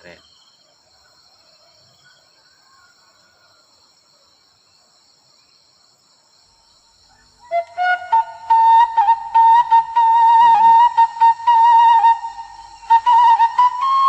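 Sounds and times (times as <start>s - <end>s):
insects chirring: 0.0s - 14.0s
flute melody: 7.4s - 14.0s.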